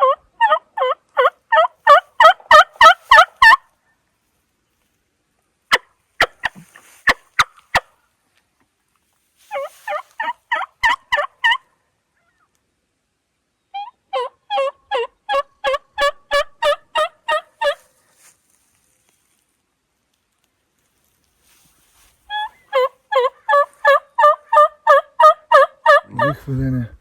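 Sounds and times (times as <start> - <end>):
turkey call clucks: 0.0 - 3.7, 9.5 - 12.5, 13.7 - 17.9, 22.3 - 26.5
turkey call yelps: 0.0 - 3.7, 9.5 - 12.4, 13.7 - 17.9, 22.3 - 26.4.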